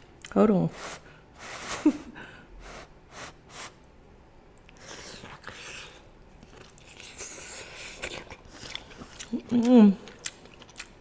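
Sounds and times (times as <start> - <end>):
person chewing and biting food: 4.6 - 11.0.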